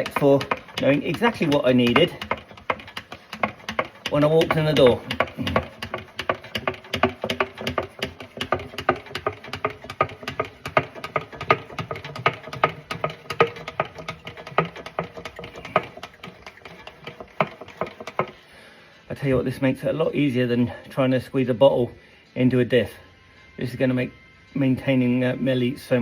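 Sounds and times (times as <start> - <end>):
hand oil pump clicking: 0.0 - 18.5.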